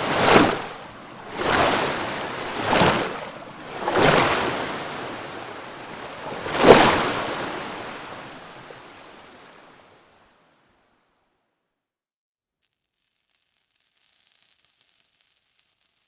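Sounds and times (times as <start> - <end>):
water lapping: 0.0 - 9.8
wind: 0.0 - 10.8.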